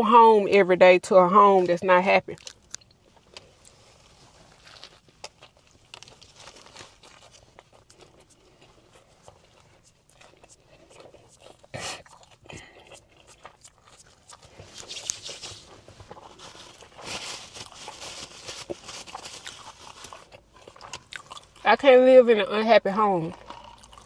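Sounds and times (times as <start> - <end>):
person chewing: 2.3 - 21.7, 23.3 - 24.0
crunchy rustling bursts: 13.9 - 20.3.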